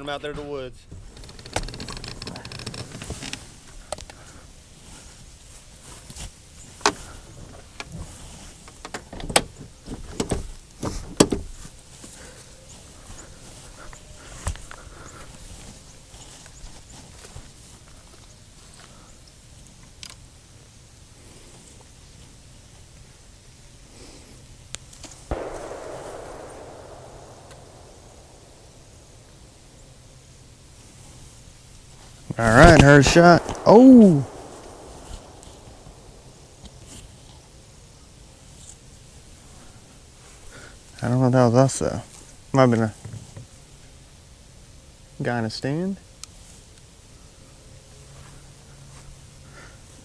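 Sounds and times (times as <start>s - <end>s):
distant gunshot: 25.3s - 30.2s, 32.4s - 37.1s
rolling echo: 25.3s - 37.8s.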